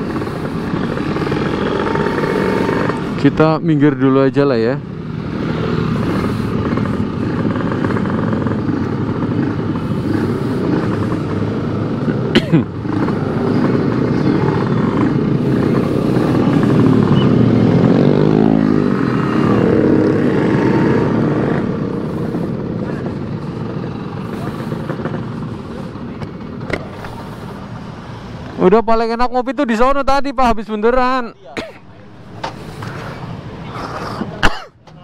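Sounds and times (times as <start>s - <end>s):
motorcycle engine running: 0.0s - 27.8s.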